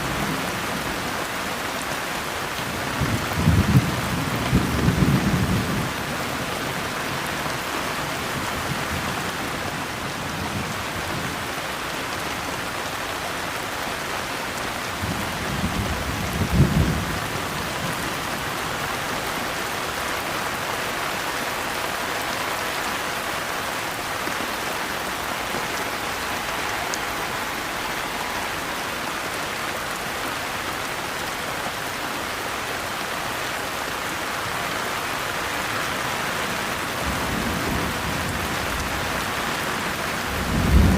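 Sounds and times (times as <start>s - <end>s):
rain falling: 0.0s - 40.9s
thunder rumble: 40.4s - 40.9s.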